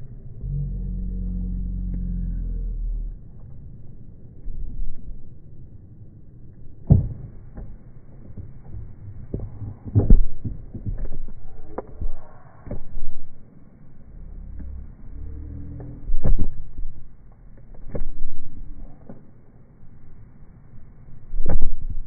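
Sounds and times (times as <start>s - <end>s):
low rumble: 0.0s - 22.0s.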